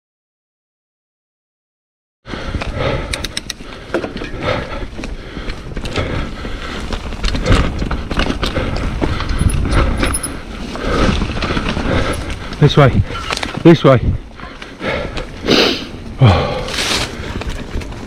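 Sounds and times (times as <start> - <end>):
bike tyre rumble: 2.3 - 18.0
wind noise on microphone: 4.4 - 14.4.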